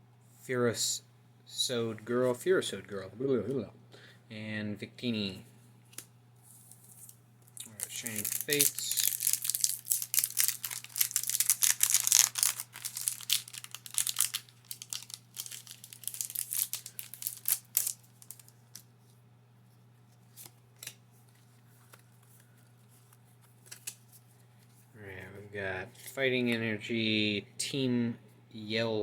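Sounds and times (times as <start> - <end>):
foil wrapper tearing and crinkling: 7.0 - 18.9.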